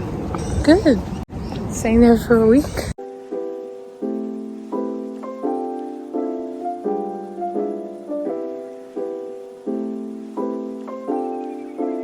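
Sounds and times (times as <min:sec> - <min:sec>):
soft piano chords: 0:03.0 - 0:12.0.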